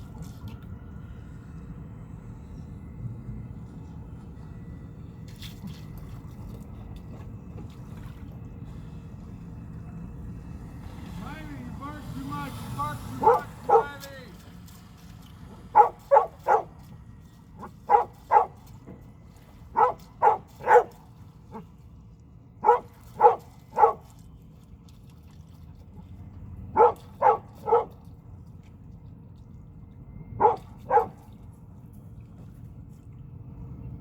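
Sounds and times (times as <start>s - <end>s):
dog barking: 13.2s - 14.0s, 15.8s - 16.7s, 17.9s - 18.6s, 19.8s - 21.0s, 22.6s - 24.0s, 26.8s - 28.0s, 30.4s - 31.2s.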